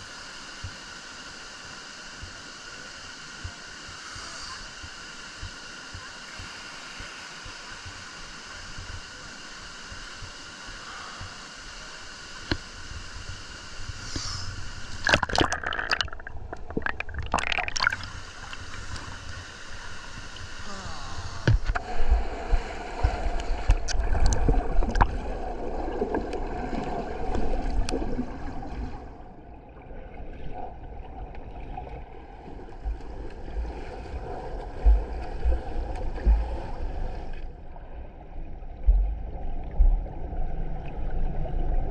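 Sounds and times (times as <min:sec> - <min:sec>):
flowing water rushing: 0:00.0 - 0:41.9
water sloshing and gurgling: 0:13.8 - 0:20.6, 0:21.3 - 0:41.9
water splashes: 0:14.8 - 0:19.6.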